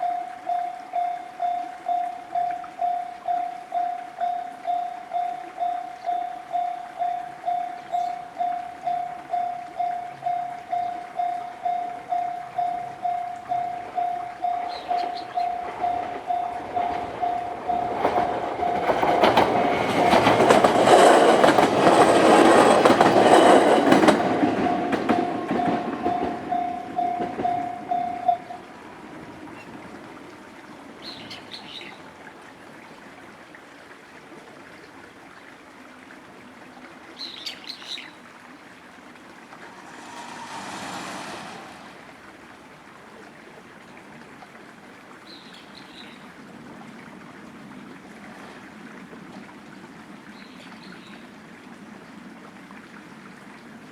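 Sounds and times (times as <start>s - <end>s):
bird chirps: 0.0s - 17.8s
level crossing alarm ringing: 0.0s - 20.1s, 21.9s - 28.6s
train wheels clattering over rails: 14.9s - 28.5s, 39.7s - 42.2s.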